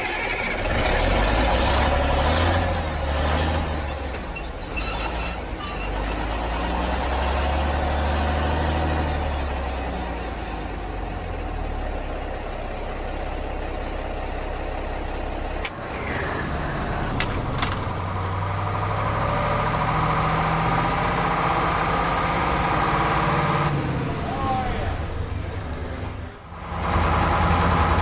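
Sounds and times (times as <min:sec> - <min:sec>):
vehicle engine running: 0:06.1 - 0:28.0.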